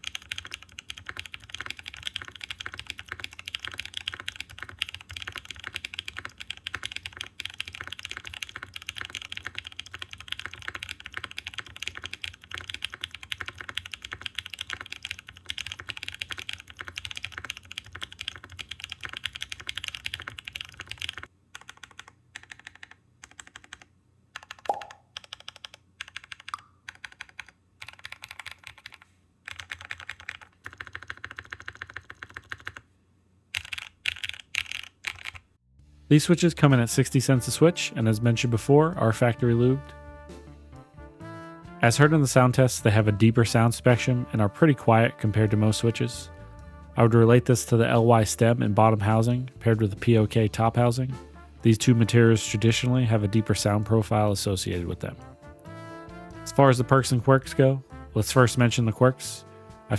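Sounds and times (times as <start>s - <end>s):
mechanical keyboard typing: 0.0s - 32.8s, 33.6s - 35.5s.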